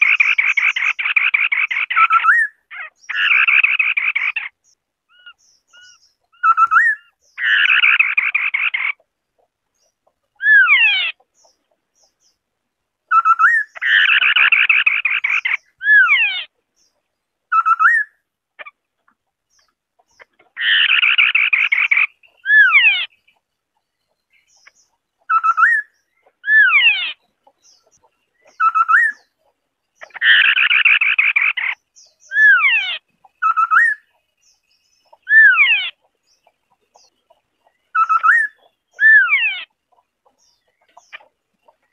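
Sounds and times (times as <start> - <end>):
bird harsh grating chatter: 0.0 - 4.6, 5.8 - 9.1, 13.2 - 16.5, 20.0 - 23.4, 24.5 - 34.2.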